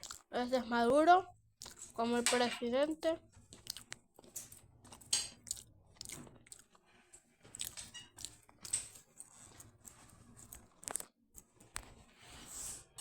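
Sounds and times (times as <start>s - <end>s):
mouth clicks and smacks: 0.0s - 0.3s, 1.6s - 2.0s, 3.6s - 4.0s, 5.4s - 6.7s
person chewing food: 0.0s - 0.4s, 1.4s - 2.0s, 3.3s - 11.9s.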